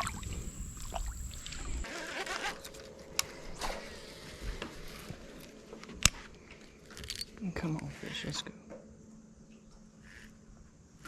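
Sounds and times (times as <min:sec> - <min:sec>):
water splashing and trickling: 0:00.0 - 0:01.9.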